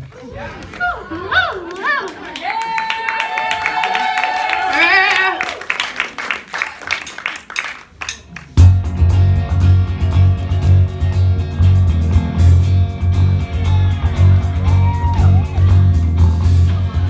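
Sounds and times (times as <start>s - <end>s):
rock band with guitar and bass: 8.6s - 17.0s.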